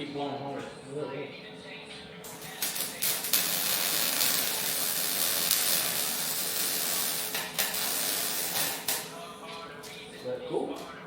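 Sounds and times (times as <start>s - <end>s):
welding arc crackling: 2.2s - 9.2s.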